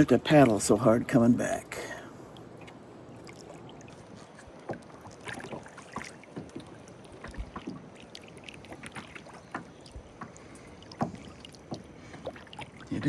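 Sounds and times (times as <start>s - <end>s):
water dripping off paddle: 1.6s - 13.0s
kayak paddle splashing in water: 2.6s - 13.0s.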